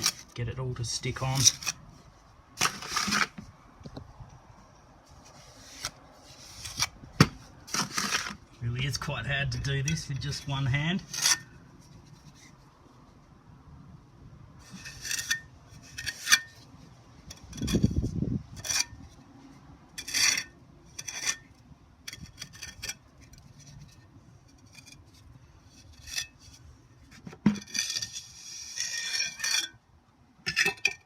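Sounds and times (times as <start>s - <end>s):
trowel scraping mortar: 0.0s - 0.4s, 1.0s - 1.8s, 2.6s - 3.4s, 7.7s - 8.4s, 9.9s - 11.6s, 14.7s - 16.6s, 20.0s - 21.4s, 27.5s - 29.8s.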